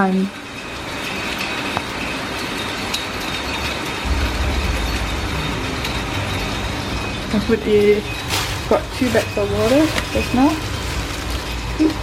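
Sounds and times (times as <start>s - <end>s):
heavy rain falling: 3.5s - 12.0s
low rumble: 4.0s - 11.0s.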